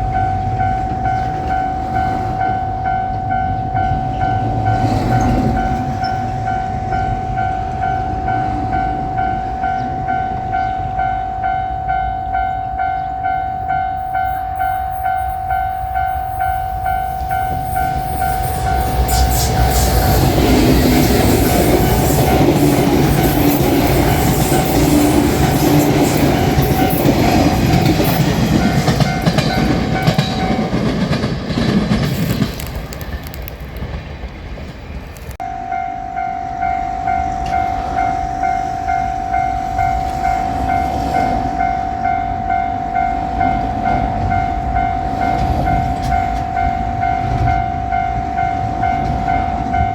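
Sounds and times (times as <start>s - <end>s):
railroad crossing bell ringing: 0.0s - 33.4s, 35.2s - 49.9s
train rumbling past: 0.0s - 49.9s
wheels clattering over rail joints: 17.8s - 35.4s.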